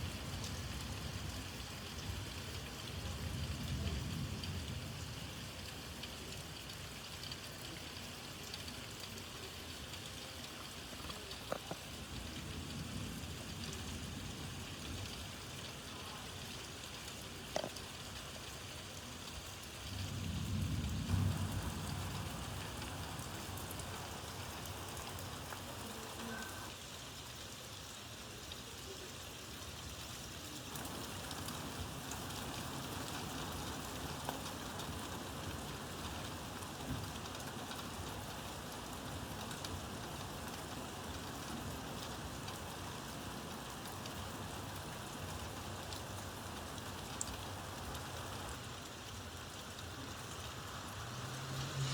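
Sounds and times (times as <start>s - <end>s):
steady rain falling: 0.0s - 51.9s
low rumble: 50.9s - 51.9s.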